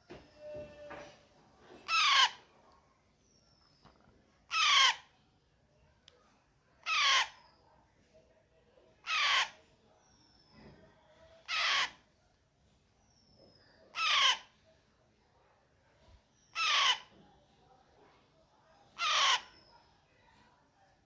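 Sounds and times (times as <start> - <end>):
parakeet chick calling: 1.9 - 2.4, 4.5 - 5.0, 6.9 - 7.4, 11.5 - 12.0, 14.0 - 14.4, 16.5 - 17.0, 19.0 - 19.5.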